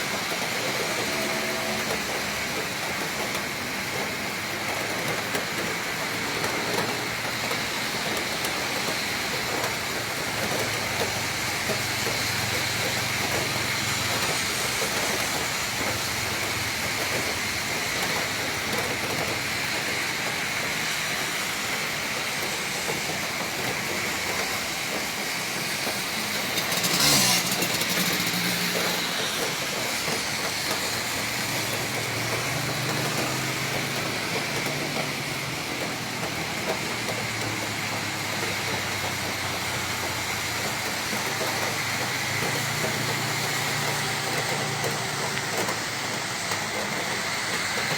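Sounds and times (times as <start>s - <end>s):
heavy rain: 0.0s - 47.9s
traffic hum: 0.0s - 47.9s.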